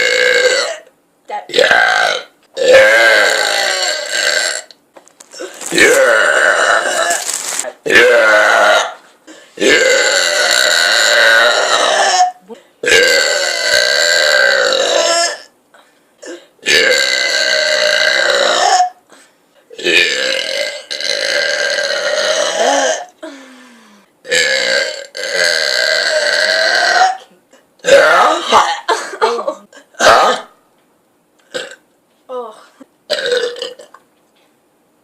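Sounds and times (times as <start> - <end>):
long drawn-out burps: 0.0 - 0.9, 1.6 - 7.2, 9.6 - 15.5, 16.2 - 19.0, 19.7 - 23.2, 24.2 - 28.9, 31.4 - 31.8, 33.1 - 34.0.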